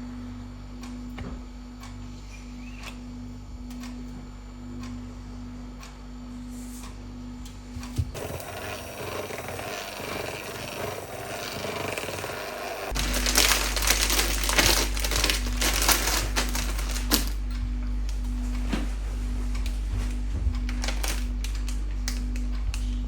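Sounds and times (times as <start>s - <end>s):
electric hand mixer running: 8.1s - 17.4s.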